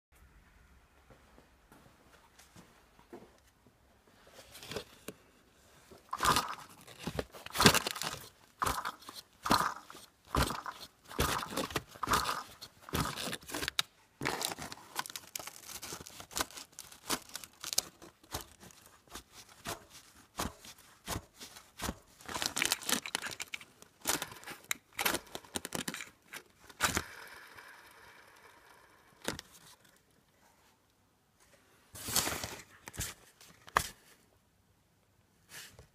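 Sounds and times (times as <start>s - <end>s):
pulleys rattling and clicking: 6.2s - 14.6s.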